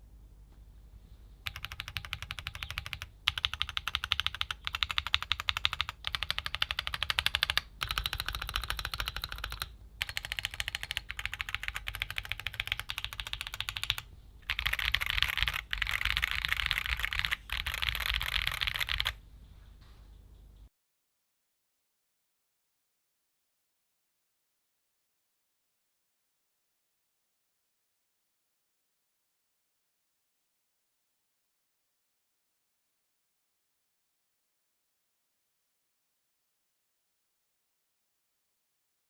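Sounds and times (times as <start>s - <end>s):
mechanical keyboard typing: 1.5s - 19.2s.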